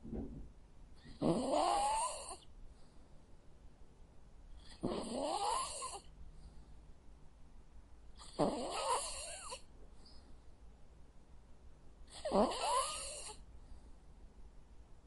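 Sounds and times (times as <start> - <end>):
dog snoring: 1.0 - 2.5, 4.6 - 6.1, 8.2 - 9.6, 12.1 - 13.4.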